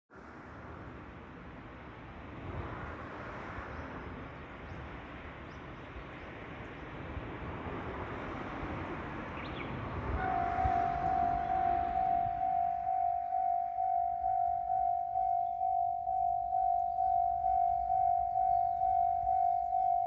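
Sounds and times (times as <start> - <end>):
outdoor rushing noise: 0.2 - 14.0
level-crossing warning bell: 10.0 - 20.0.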